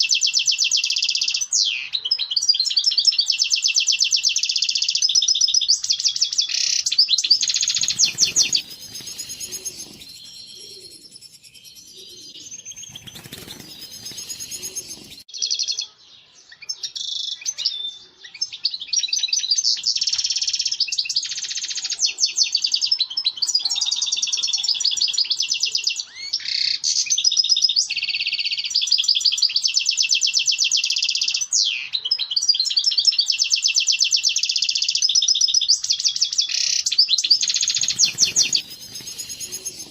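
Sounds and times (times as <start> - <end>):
goldfinch twittering song: 0.0 - 15.8, 28.6 - 39.9.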